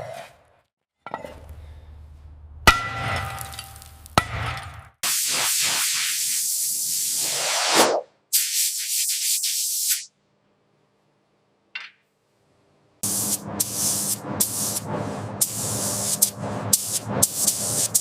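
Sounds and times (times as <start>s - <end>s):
hissing spray from nozzle: 5.0s - 10.1s, 13.0s - 18.0s.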